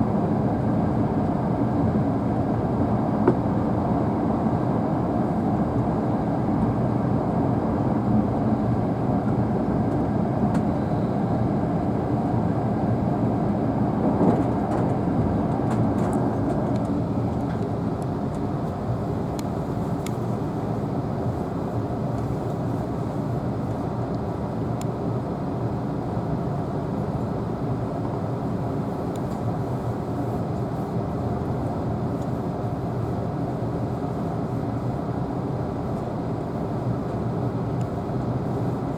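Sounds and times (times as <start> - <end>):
train cabin rumble: 13.8 - 19.4.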